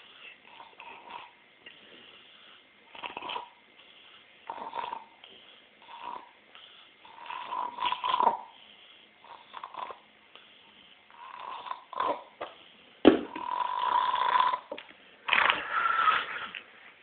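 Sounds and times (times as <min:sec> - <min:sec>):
man snoring: 0:05.8 - 0:06.3, 0:07.0 - 0:08.4, 0:13.4 - 0:14.7.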